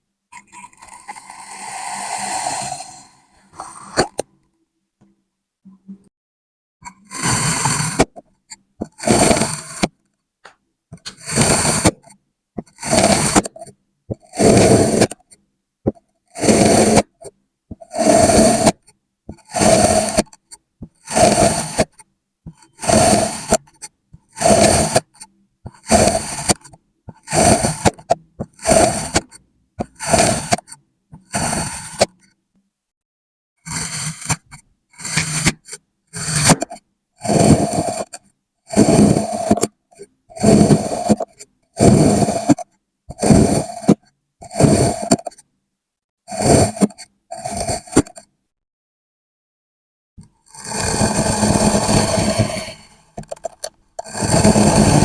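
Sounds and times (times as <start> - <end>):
sand scraping strokes: 1.0 - 3.9.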